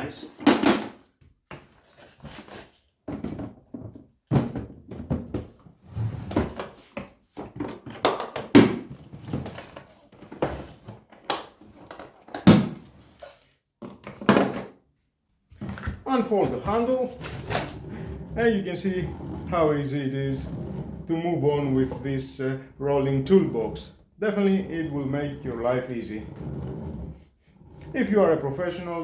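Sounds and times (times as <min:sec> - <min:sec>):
plastic toolbox knocks and clicks: 0:03.1 - 0:05.6, 0:13.8 - 0:14.7.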